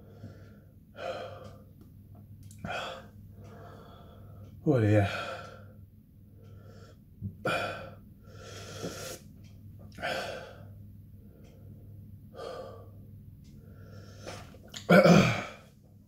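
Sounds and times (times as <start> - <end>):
man breathing hard: 0.0 - 1.7, 2.6 - 5.8, 6.4 - 9.2, 10.0 - 14.5.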